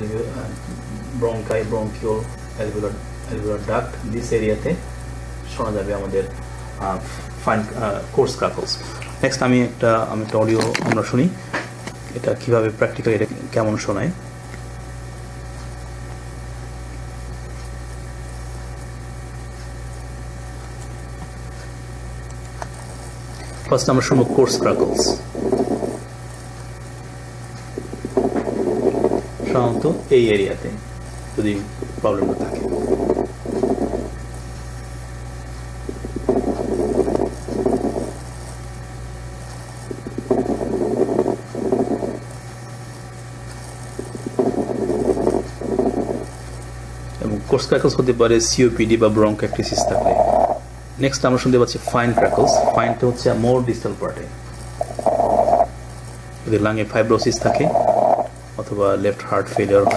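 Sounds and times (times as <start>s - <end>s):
low electrical hum with hiss: 0.0s - 59.9s
lung crackles: 20.4s - 59.9s.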